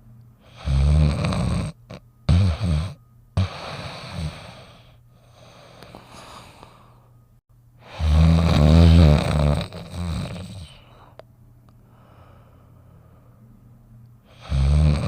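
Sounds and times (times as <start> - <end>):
loud rattling snore: 0.5 - 4.8, 7.9 - 10.8, 14.3 - 15.0
soft breath out: 3.5 - 7.2, 11.8 - 13.5
breathy intake: 11.8 - 13.4.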